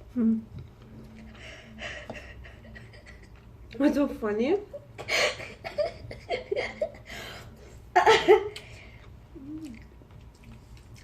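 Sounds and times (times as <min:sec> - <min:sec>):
person laughing: 0:01.8 - 0:03.4.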